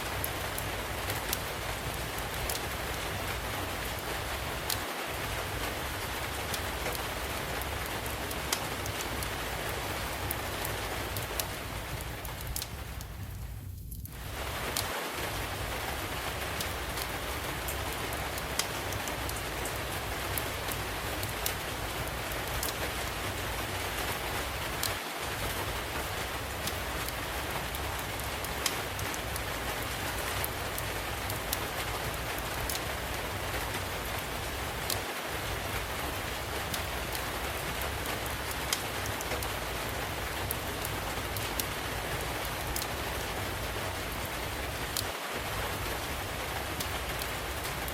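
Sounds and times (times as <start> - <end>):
steady rain falling: 0.0 - 47.9
wood fire crackling: 0.0 - 47.9
sharp fire pops: 7.9 - 19.8.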